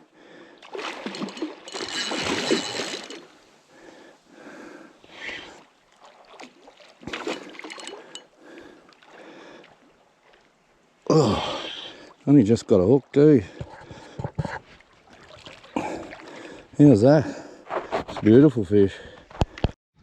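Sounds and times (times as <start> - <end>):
water splashing: 0.6 - 3.6, 5.2 - 10.6, 13.9 - 16.8.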